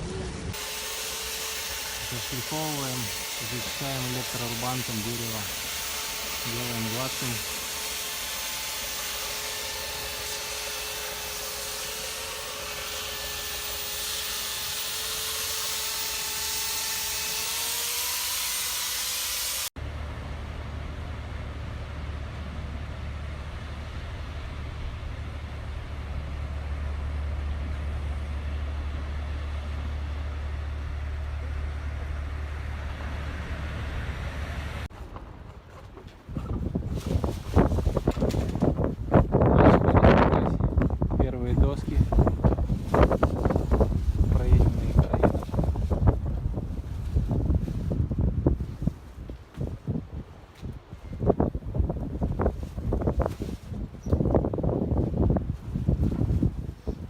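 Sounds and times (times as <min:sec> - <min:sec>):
electric planer whining on wood: 0:00.1 - 0:19.8
low rumble with hiss: 0:19.8 - 0:35.7.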